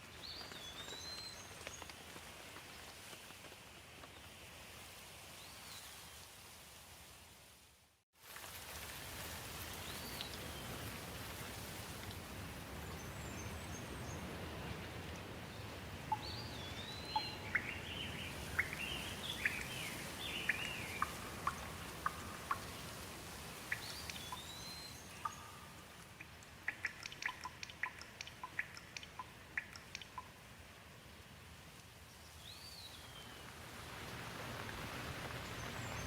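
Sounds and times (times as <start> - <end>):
rain falling: 0.0 - 5.0, 8.2 - 36.0
birds chirping: 16.0 - 22.9, 26.7 - 30.3
drops ticking: 25.2 - 30.4.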